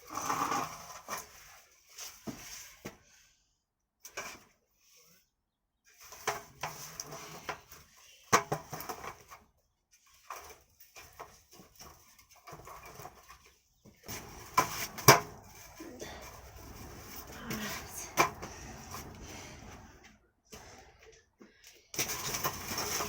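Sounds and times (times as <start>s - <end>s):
rustling: 9.2s - 23.0s.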